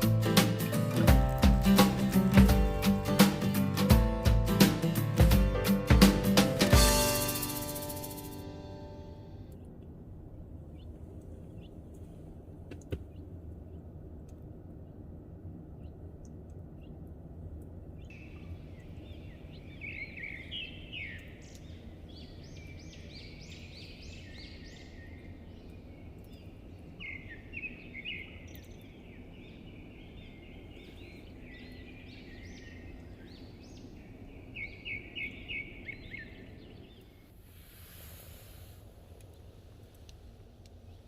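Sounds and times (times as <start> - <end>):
low background rumble: 6.6 - 41.0
bird chirping: 18.0 - 37.3.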